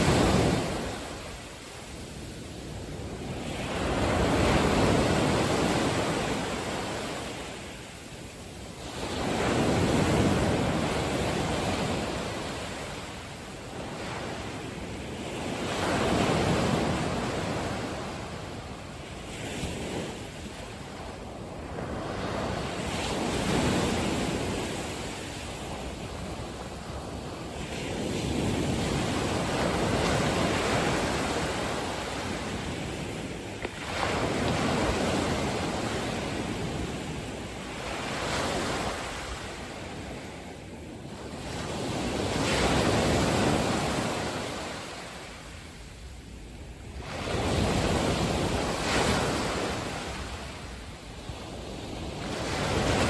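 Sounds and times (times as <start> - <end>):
sea waves washing in: 0.0 - 53.0.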